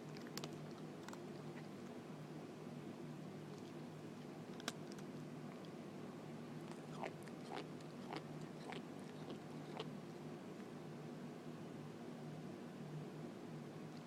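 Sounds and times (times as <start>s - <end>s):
faint low hum: 0.0s - 14.0s
crunchy chewing: 6.7s - 9.9s.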